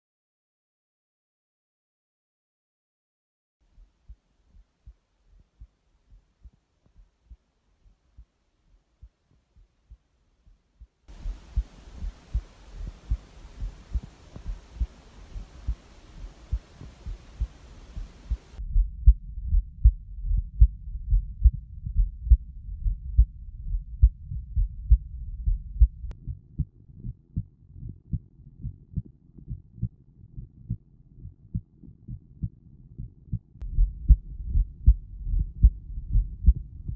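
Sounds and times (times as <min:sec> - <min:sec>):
heartbeat thumps: 0:09.0 - 0:36.9
steady hiss: 0:11.1 - 0:18.6.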